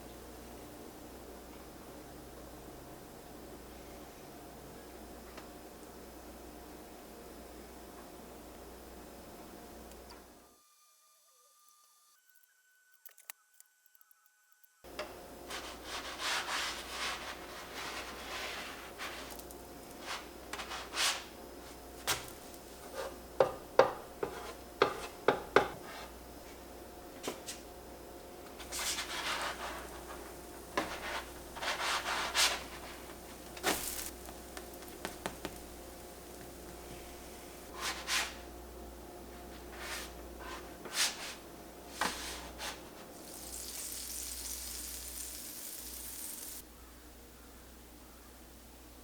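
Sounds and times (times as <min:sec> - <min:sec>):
utensil scraping in a bowl: 0:15.5 - 0:23.2, 0:24.2 - 0:26.2, 0:28.5 - 0:38.4.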